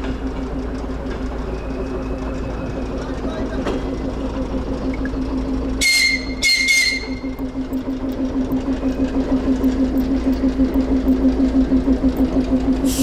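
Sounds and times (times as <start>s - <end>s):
diesel railcar engine pulsing: 0.0s - 13.0s
high-pitched whistle blasts: 5.8s - 7.4s.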